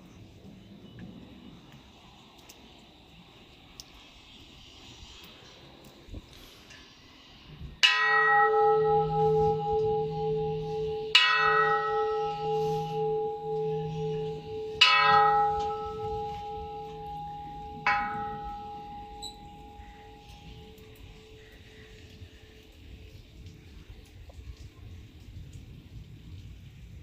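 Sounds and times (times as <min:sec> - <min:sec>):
large temple bell ringing: 0:07.8 - 0:21.6.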